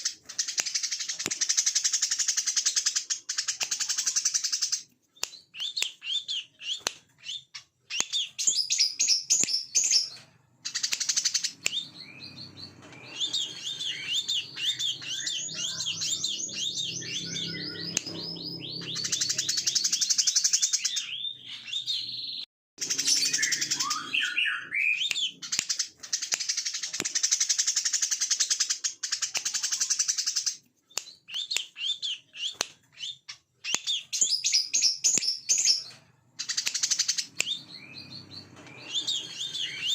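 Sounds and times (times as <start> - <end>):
sunbird singing chirps and trills: 10.7 - 22.1, 22.8 - 25.4.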